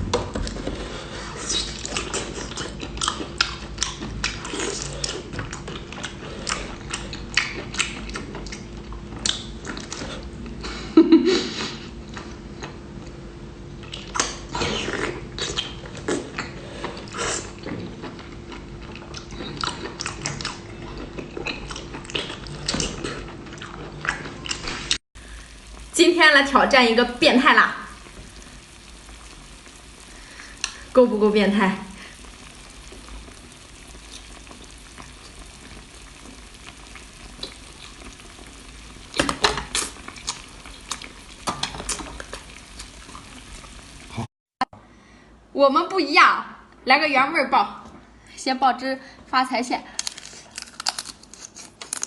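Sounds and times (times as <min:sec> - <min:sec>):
faint steady hum: 0:00.0 - 0:52.0
chewing and biting seafood: 0:01.4 - 0:10.3, 0:13.9 - 0:25.0.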